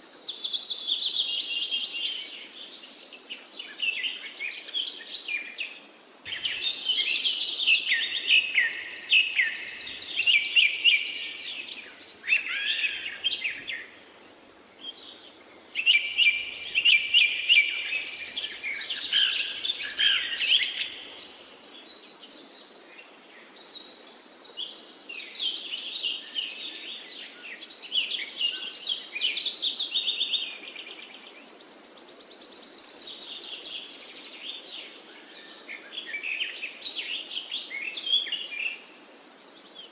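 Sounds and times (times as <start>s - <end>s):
songbird trilling chirps: 6.3s - 13.9s, 14.8s - 22.0s.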